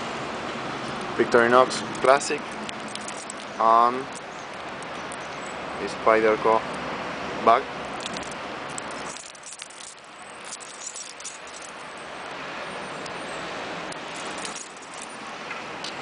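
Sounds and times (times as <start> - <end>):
city traffic: 0.0 - 16.0
keys jingling: 1.9 - 5.3, 8.0 - 12.4, 13.9 - 15.2.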